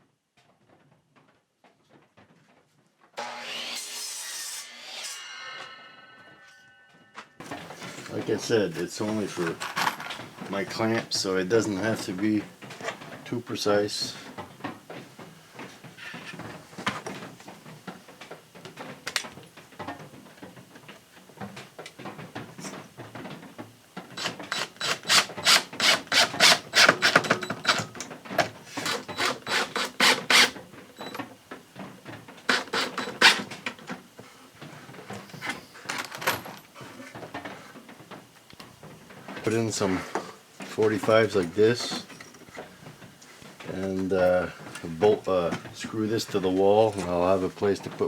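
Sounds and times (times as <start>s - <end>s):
rasp scraping wood: 24.2s - 30.6s, 32.4s - 33.6s.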